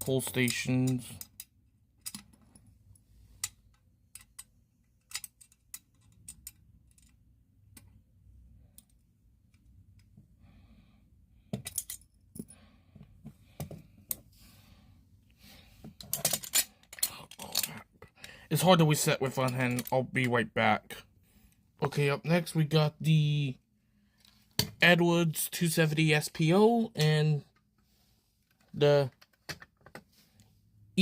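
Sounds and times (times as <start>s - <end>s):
small metal clicks and rattles: 0.4s - 2.6s, 3.4s - 7.9s, 16.0s - 17.8s.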